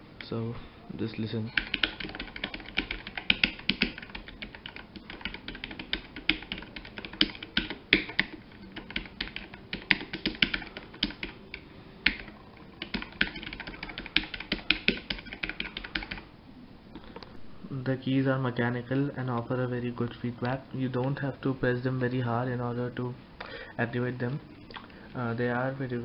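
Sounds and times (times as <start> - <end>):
keyboard typing clicks: 1.5 - 16.3.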